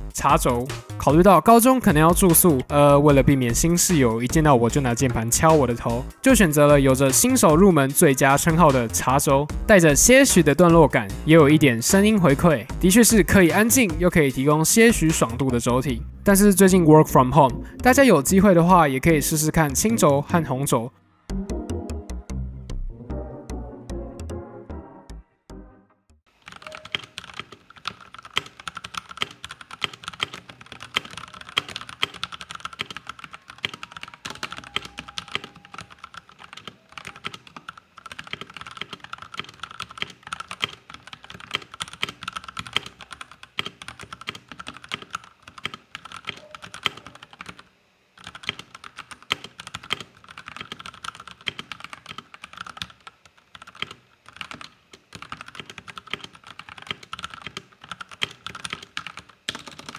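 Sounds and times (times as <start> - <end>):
mechanical keyboard typing: 26.3 - 59.9.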